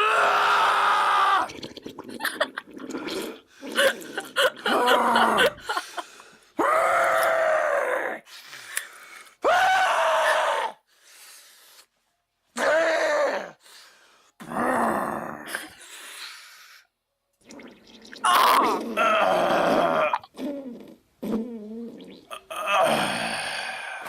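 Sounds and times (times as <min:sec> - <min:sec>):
person groaning and straining: 0:00.0 - 0:01.6, 0:03.6 - 0:05.8, 0:06.6 - 0:08.3, 0:12.6 - 0:13.6, 0:14.4 - 0:15.8, 0:18.2 - 0:24.0
person grunting: 0:04.6 - 0:05.6, 0:22.3 - 0:24.0.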